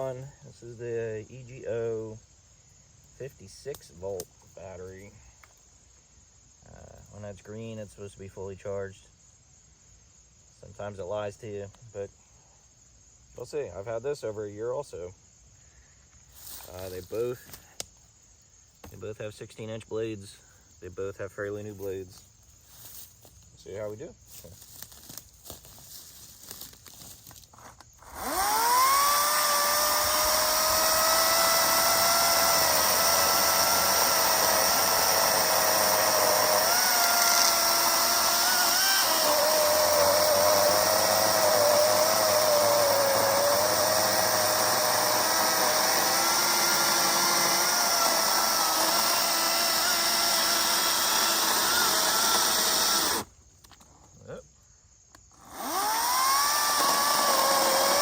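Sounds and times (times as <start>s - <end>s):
chainsaw cutting through log: 28.0s - 53.3s, 55.4s - 58.0s.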